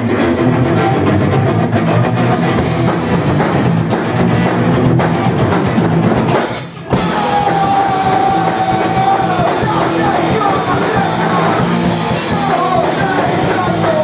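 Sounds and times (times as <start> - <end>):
drum kit beat: 0.0 - 14.0
rock band playing: 0.0 - 14.0.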